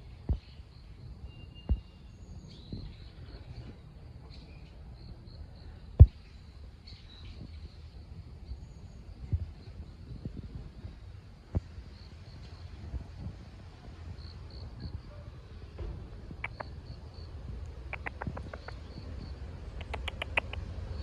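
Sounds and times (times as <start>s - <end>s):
birds chirping: 0.0s - 10.3s, 16.4s - 21.0s.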